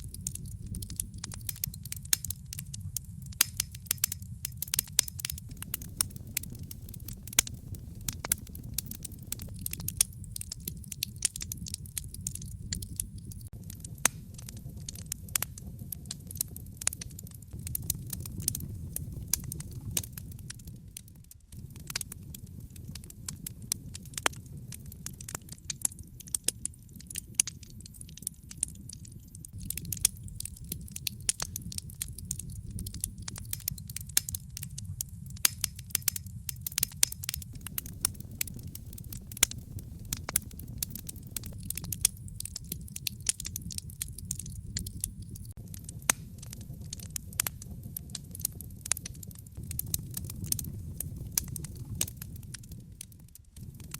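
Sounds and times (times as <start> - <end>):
low rumble of flames: 0.0 - 53.9
wood fire crackling: 0.0 - 53.9
sharp pops: 35.3 - 43.8.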